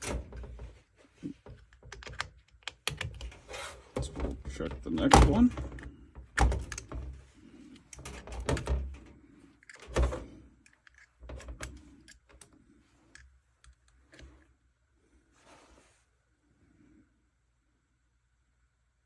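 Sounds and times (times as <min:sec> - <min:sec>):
knocks and clicks of handled parts: 0:00.0 - 0:03.4, 0:04.0 - 0:12.5.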